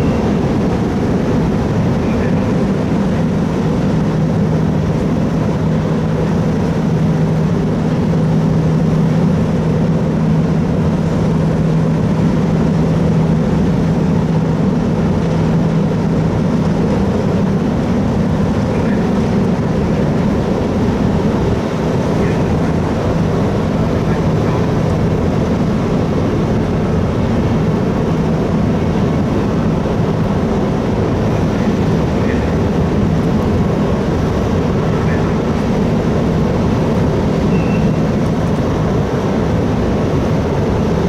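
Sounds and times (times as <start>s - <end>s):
rushing background noise: 0.0s - 41.0s
ship engines droning: 0.0s - 41.0s.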